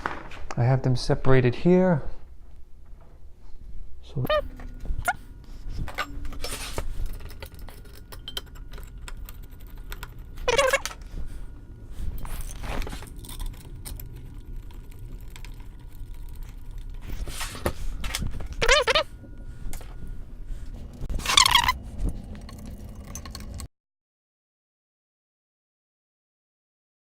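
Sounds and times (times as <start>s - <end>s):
high wavering whine: 2.6s - 23.7s
metal parts clicking and clinking: 5.8s - 11.1s, 12.2s - 19.0s, 21.2s - 23.7s.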